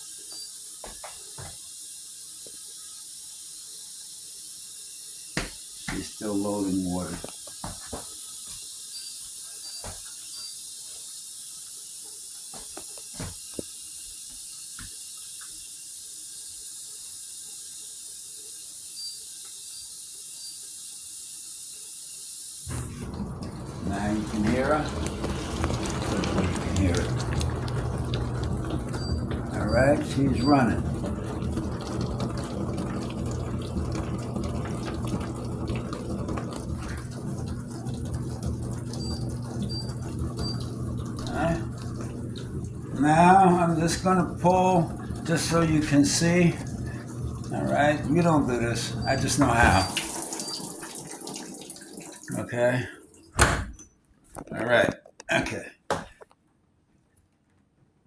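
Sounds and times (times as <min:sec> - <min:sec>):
dishwasher water hissing in: 0:00.0 - 0:53.8
pump motor hum: 0:22.6 - 0:53.7.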